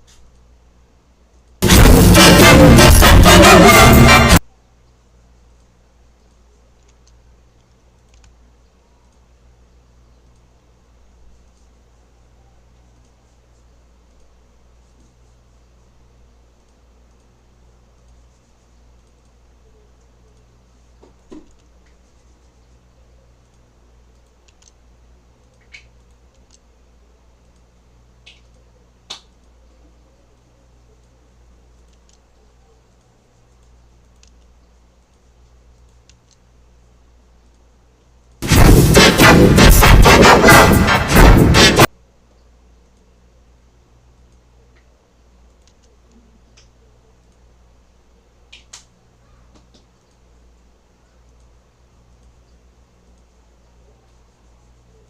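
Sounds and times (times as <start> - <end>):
mouse and keyboard clicks: 5.6 - 8.4, 16.6 - 26.7, 27.4 - 29.6, 30.9 - 36.5, 44.3 - 47.4.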